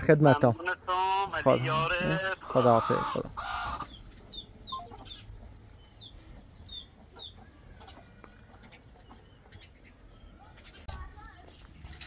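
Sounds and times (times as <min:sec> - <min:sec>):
faint bird chirping: 0:03.4 - 0:12.0.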